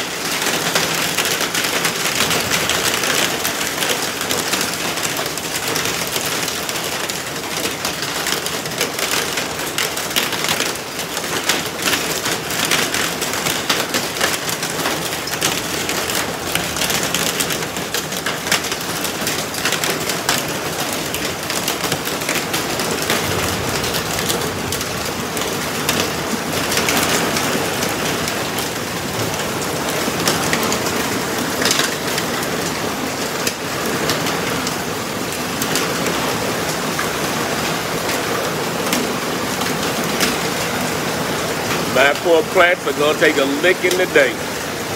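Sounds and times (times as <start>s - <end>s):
hailstones clattering: 0.0s - 44.9s
heavy rain hissing: 11.7s - 44.9s.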